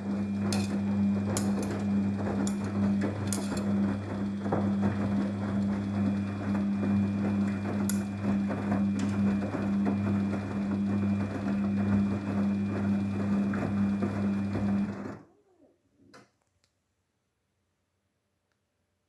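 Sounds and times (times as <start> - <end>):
washing machine humming: 0.0 - 15.4.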